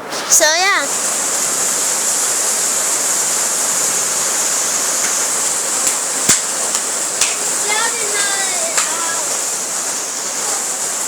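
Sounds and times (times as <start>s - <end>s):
rain pouring: 0.0s - 11.0s
sharp taps: 5.0s - 9.3s.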